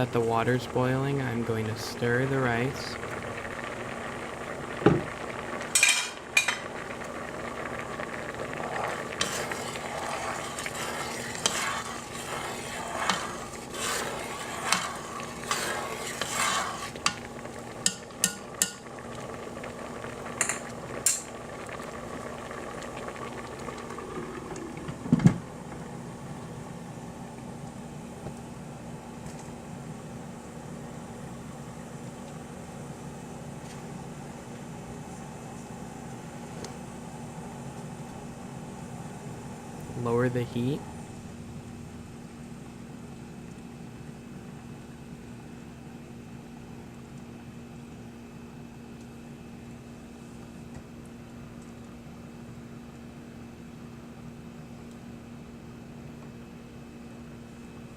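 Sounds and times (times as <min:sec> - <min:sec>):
boiling water: 0:00.0 - 0:57.9
steady low hum: 0:00.0 - 0:57.9
utensil stirring rice in pot: 0:08.6 - 0:17.2.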